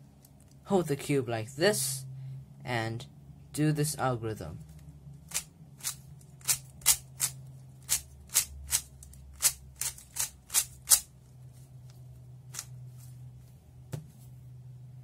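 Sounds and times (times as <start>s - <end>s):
puzzle cube turning clicks: 5.3s - 11.1s.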